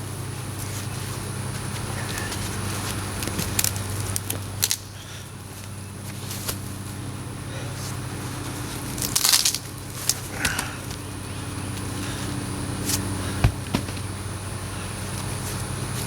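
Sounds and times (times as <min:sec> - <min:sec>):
engine idling: 0:00.0 - 0:16.0
sharp cracks and crunches: 0:00.5 - 0:06.8, 0:08.6 - 0:11.1.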